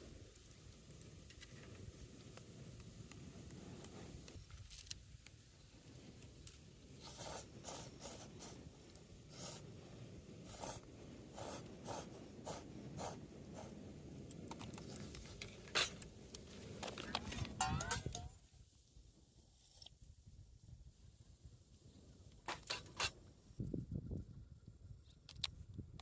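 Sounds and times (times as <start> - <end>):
scraping and rubbing strokes: 6.9 - 8.7, 9.3 - 13.9.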